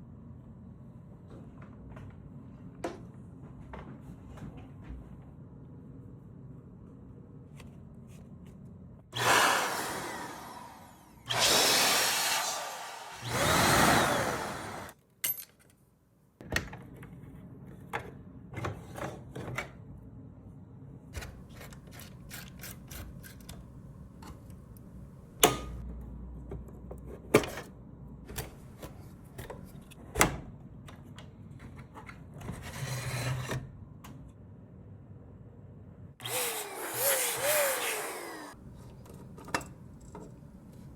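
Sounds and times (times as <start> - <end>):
loud noisy bursts: 9.2 - 14.9.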